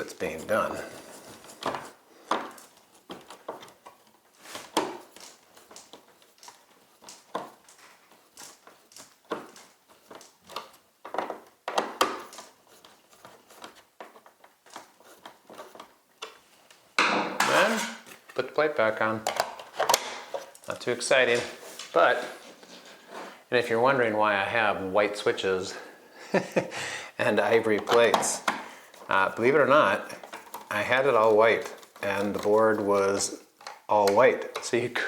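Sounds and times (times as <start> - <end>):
clicks taps and scrapes of hands: 1.3 - 16.8.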